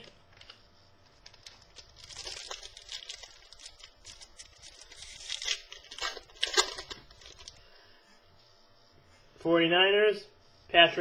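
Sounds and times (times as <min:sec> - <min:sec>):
cards and packaging rustling: 0:00.0 - 0:07.6.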